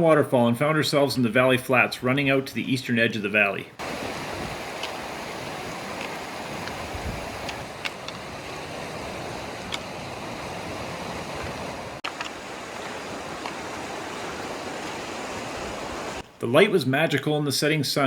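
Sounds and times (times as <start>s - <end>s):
stream and waterfalls rushing: 3.8s - 16.3s.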